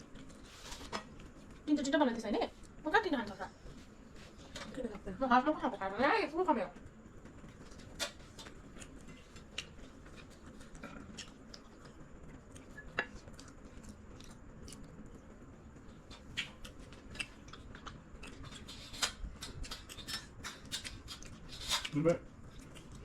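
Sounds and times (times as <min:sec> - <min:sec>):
chewing: 0:07.5 - 0:23.0.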